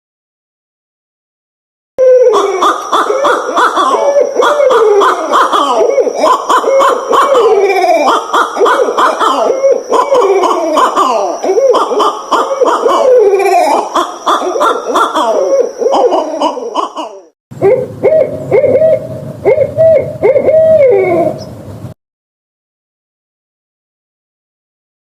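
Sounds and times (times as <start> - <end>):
owls cackling and hooting: 2.0 - 21.6.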